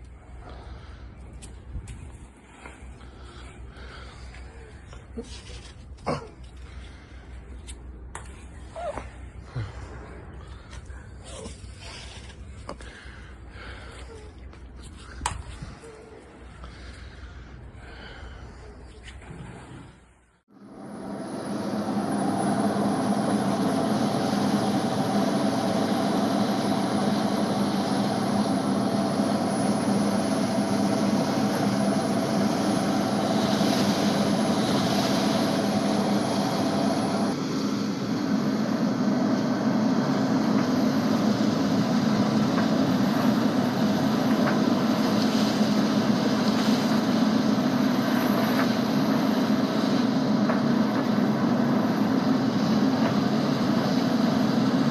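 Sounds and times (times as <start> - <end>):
gale wind: 5.8 - 54.9
boat engine droning: 15.9 - 54.9
sea noise: 17.9 - 54.9.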